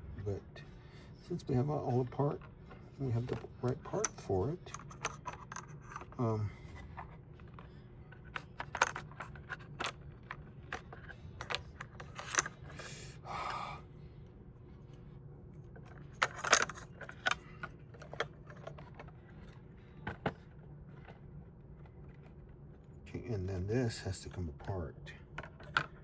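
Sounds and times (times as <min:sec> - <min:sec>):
plastic and metal parts clicking: 0:06.8 - 0:12.8, 0:15.8 - 0:21.2.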